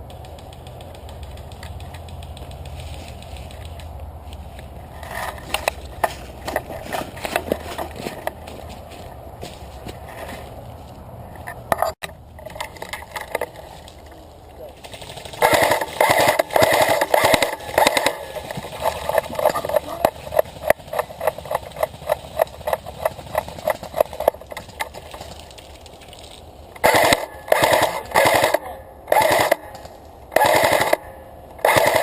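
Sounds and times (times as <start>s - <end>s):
airsoft gun clicks: 0.0s - 4.0s
airsoft rapid fire bursts: 15.0s - 24.3s, 26.8s - 32.0s.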